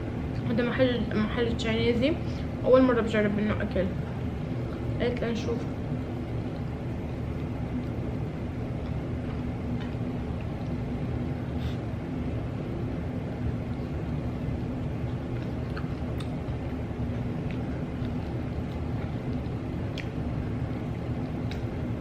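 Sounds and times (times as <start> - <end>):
low background hum: 0.0 - 22.0
chewing and utensil clicks: 15.0 - 20.2, 21.2 - 21.9.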